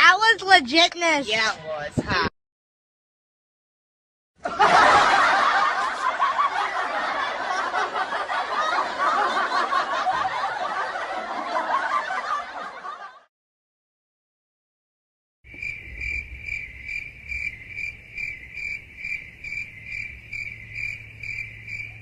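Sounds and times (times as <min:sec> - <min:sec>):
crowd laughing: 0:04.4 - 0:13.3.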